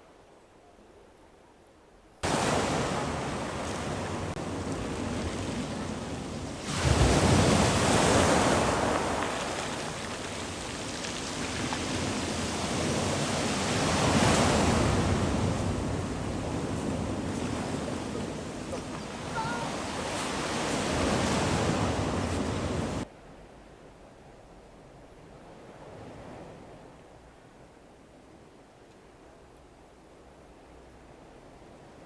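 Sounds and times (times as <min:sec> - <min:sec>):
sea waves breaking on shore: 0:02.2 - 0:23.1.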